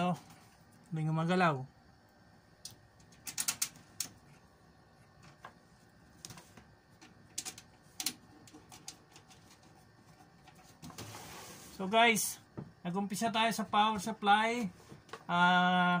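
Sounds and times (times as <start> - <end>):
computer case parts clicking: 2.6 - 4.2, 7.0 - 9.7.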